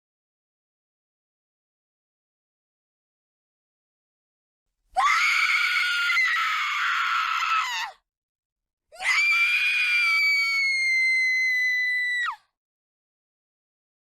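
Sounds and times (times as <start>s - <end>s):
woman screaming in terror: 5.0s - 8.0s, 9.0s - 12.4s.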